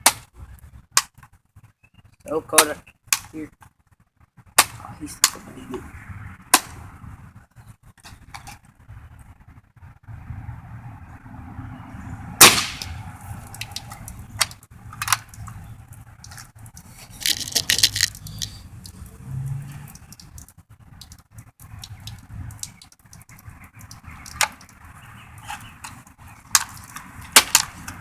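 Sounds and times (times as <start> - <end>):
pellet rifle crack: 4.6 - 5.4, 12.4 - 13.0, 26.5 - 28.0.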